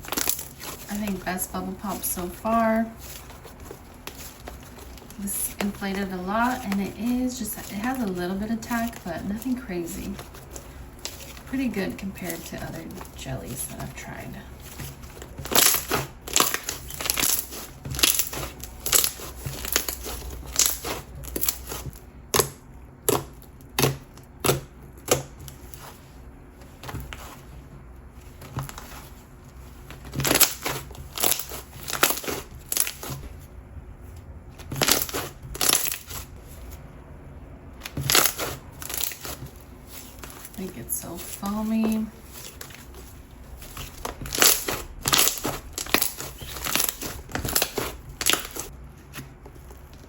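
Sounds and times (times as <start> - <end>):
slime squeezed popping and crackling: 43.9 - 48.7.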